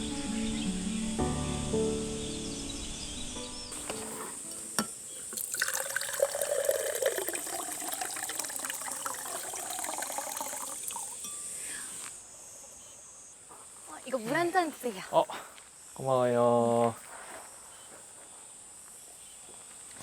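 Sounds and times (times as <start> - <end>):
water pouring into a cup: 4.5 - 11.4.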